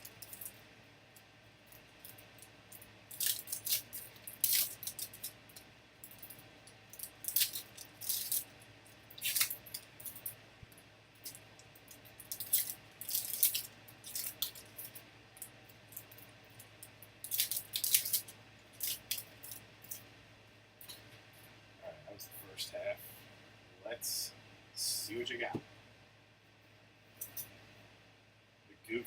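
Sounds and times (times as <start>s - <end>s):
card pack wrappers tearing and crinkling: 3.1s - 5.4s, 7.0s - 8.5s, 9.1s - 9.9s, 12.2s - 14.9s, 17.2s - 19.5s.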